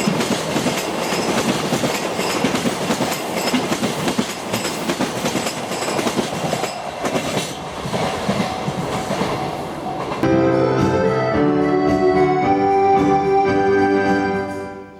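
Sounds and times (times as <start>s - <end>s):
train wheels knocking: 0.0s - 10.2s
freight train rolling on rails: 0.0s - 11.3s
music: 10.2s - 14.9s.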